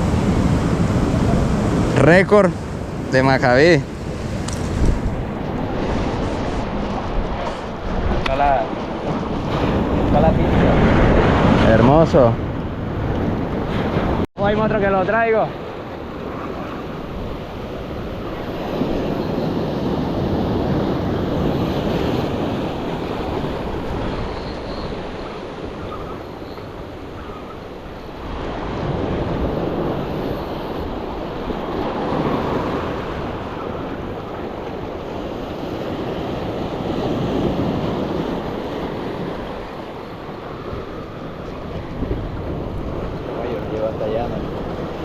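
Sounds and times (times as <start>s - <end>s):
surf breaking: 0.0s - 25.9s
wind buffeting microphone: 0.0s - 45.0s.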